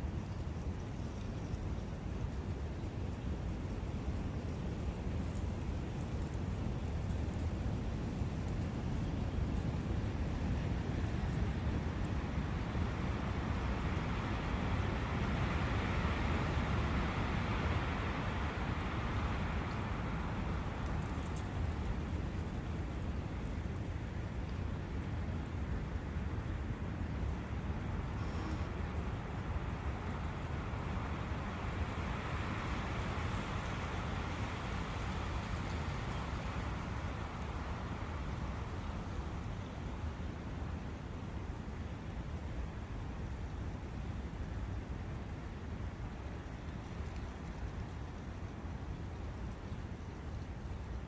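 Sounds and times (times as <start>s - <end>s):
brook flowing: 26.6s - 42.4s.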